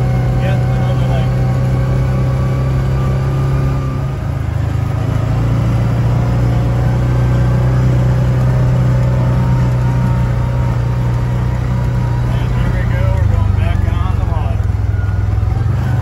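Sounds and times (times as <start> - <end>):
vehicle engine droning: 0.0 - 16.0.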